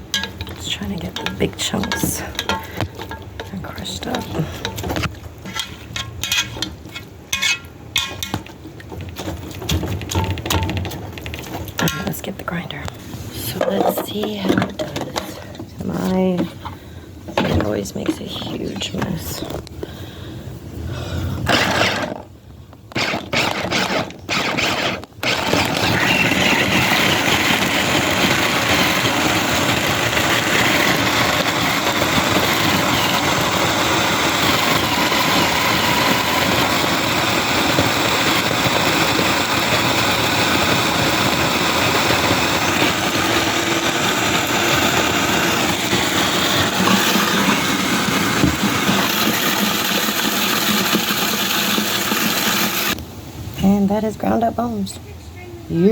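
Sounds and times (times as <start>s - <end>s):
electric grinder grinding bones: 21.5s - 22.2s, 22.9s - 53.0s.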